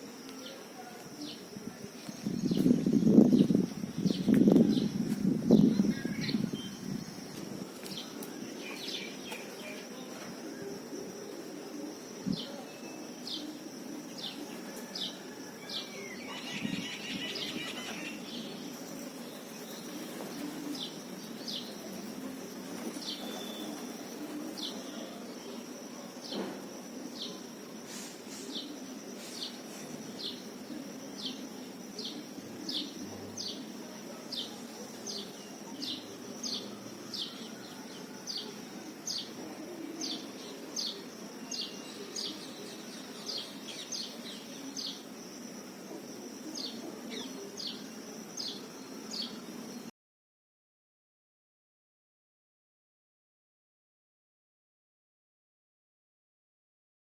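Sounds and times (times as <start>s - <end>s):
birds chirping: 15.8s - 26.4s.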